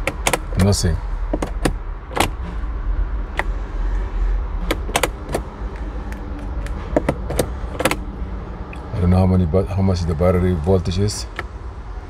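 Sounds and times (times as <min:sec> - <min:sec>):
sharp clicks and knocks: 0:00.0 - 0:02.4, 0:04.6 - 0:08.0
steady low rumble: 0:00.0 - 0:12.0.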